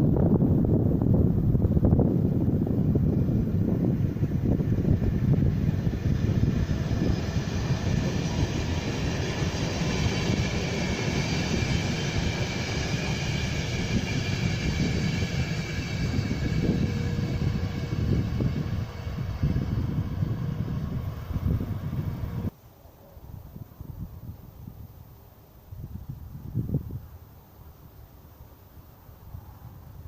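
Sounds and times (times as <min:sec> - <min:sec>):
train wheels rumbling on rails: 0:00.0 - 0:22.5
wind buffeting microphone: 0:00.0 - 0:22.5, 0:25.7 - 0:27.2.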